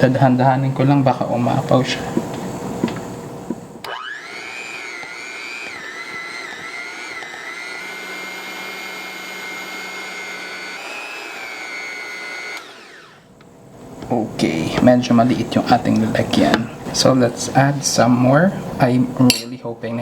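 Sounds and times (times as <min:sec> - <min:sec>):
electric mixer whining: 0:03.8 - 0:13.3.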